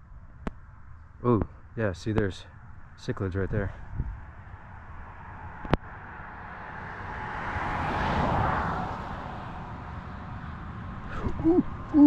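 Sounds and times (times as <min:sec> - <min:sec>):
vehicle passing on road: 0:02.5 - 0:12.0.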